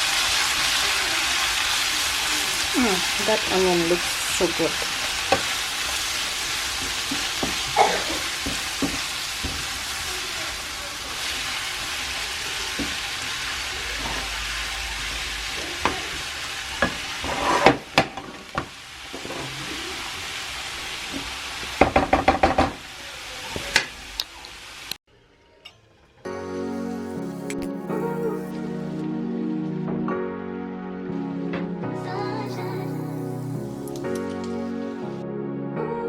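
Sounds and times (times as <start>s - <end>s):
onions sizzling in a pan: 0.0s - 25.0s, 32.0s - 35.2s
utensil knocking against pan: 21.8s - 22.8s.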